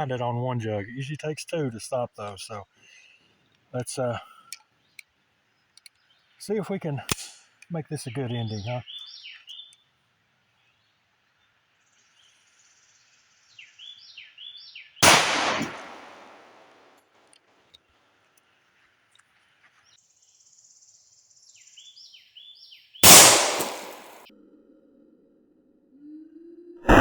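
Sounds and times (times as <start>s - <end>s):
pistol shots: 15.0s - 16.8s, 23.0s - 24.2s.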